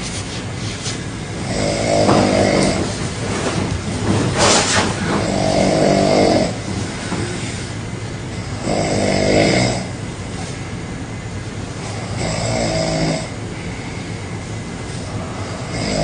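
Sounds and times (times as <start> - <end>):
person snoring loudly: 1.4 - 3.0, 5.1 - 6.6, 8.6 - 9.9, 12.0 - 13.4, 15.4 - 16.0.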